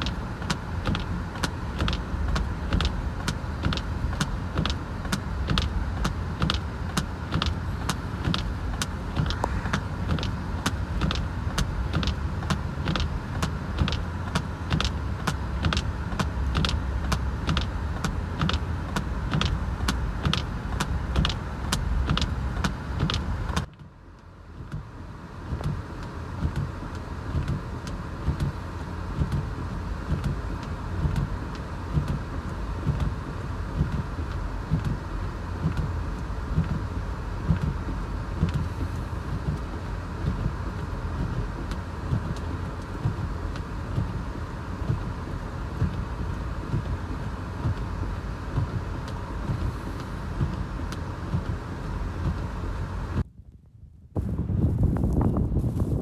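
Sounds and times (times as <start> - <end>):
regular ticking: 0.0 - 23.7
car rumbling on road: 0.0 - 56.0.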